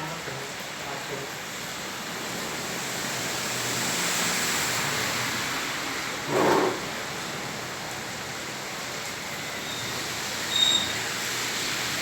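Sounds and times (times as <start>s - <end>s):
heavy rain falling: 0.0s - 12.0s
short whoosh: 6.3s - 6.9s.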